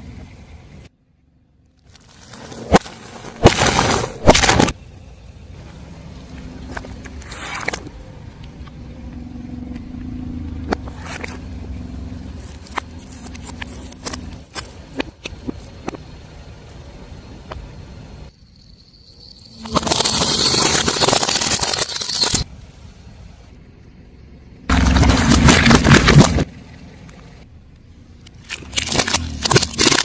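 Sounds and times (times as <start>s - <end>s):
crackles and clicks: 1.6s - 22.8s, 24.7s - 30.0s
tyre crushing objects: 1.9s - 4.8s, 24.7s - 26.5s, 28.5s - 30.0s
slow car rumble: 4.8s - 19.2s, 22.4s - 29.5s
sharp crack: 28.3s - 30.0s.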